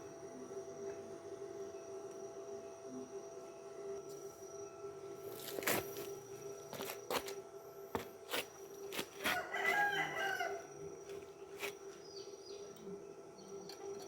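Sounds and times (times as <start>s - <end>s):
rooster crowing: 9.2s - 10.8s.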